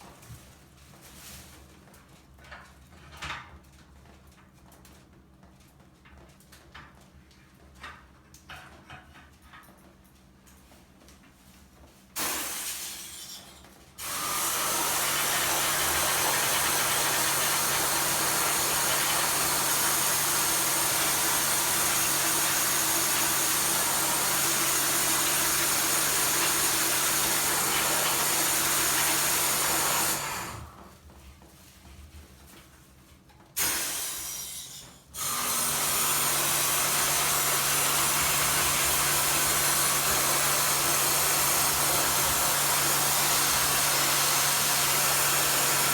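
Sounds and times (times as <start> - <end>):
pressure washer spray hissing: 12.2 - 13.3, 14.0 - 30.6, 33.6 - 34.5, 36.2 - 45.9
pump low hum: 14.0 - 30.8.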